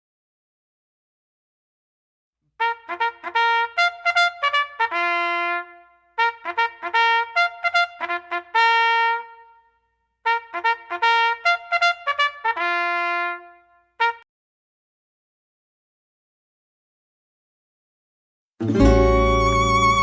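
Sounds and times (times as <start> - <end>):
solo trumpet playing: 2.6 - 9.6, 10.3 - 14.2, 18.6 - 20.0.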